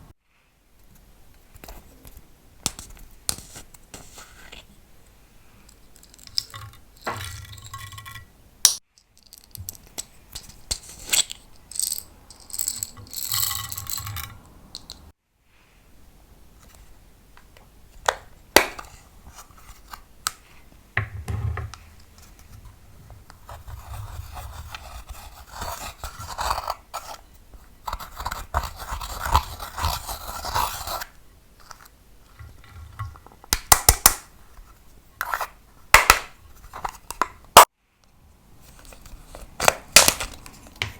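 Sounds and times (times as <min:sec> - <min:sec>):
close scraping of makeup: 0:21.8 - 0:33.4.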